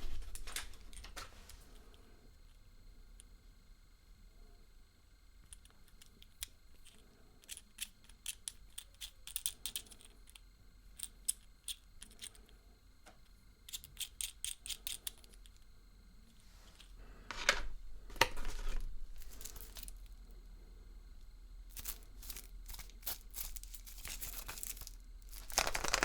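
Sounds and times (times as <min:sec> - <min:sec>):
plastic pieces clicking: 0:17.3 - 0:20.0, 0:21.7 - 0:26.0.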